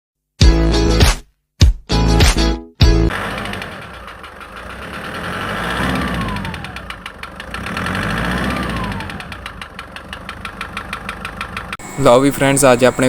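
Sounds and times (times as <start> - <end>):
engine ticking knock: 3.1 - 11.9.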